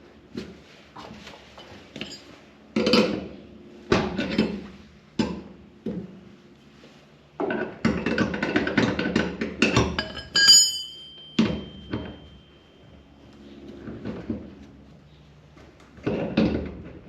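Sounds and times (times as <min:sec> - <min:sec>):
tools clinking on metal hardware: 0:01.6 - 0:02.4, 0:09.6 - 0:13.0
sharp ringing metal clink: 0:10.0 - 0:13.6.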